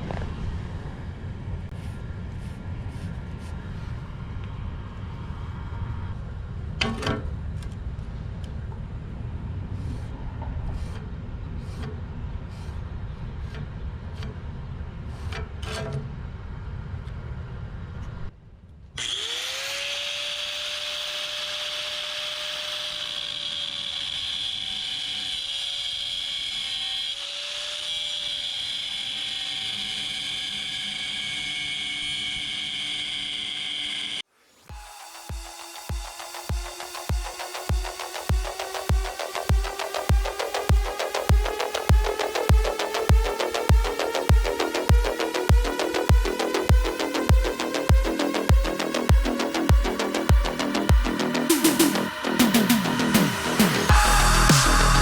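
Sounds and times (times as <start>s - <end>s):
low rumble: 0.0s - 18.7s
angle grinder cutting steel: 19.0s - 55.0s.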